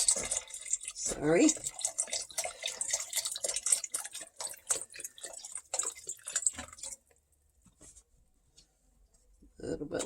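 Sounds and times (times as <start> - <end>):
broth pouring and splashing: 0.0 - 7.4.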